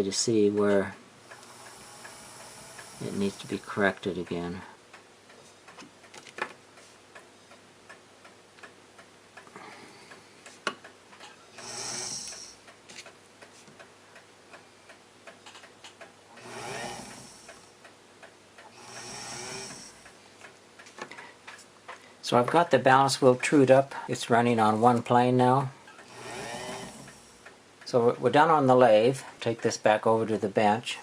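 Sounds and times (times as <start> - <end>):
small ticks and clicks: 0.4 - 22.1.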